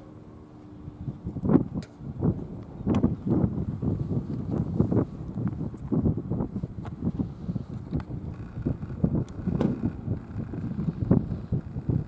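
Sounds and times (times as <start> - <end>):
wind buffeting microphone: 0.6 - 12.0.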